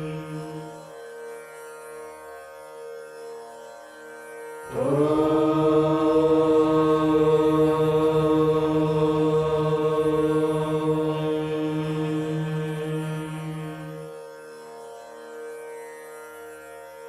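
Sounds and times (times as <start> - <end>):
soft steady drone: 4.7 - 14.2.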